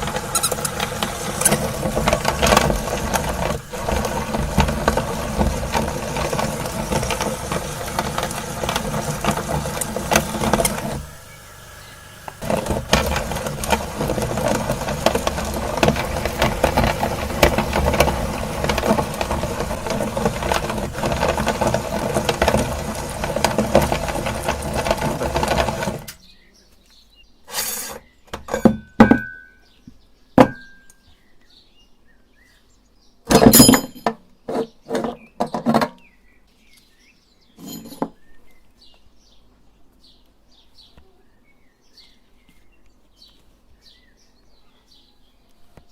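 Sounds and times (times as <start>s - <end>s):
meat grinder motor hum: 0.0s - 26.2s.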